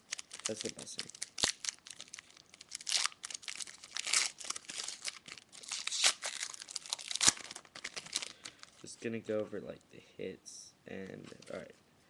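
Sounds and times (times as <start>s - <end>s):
wrappers tearing and crinkling: 0.0s - 8.8s.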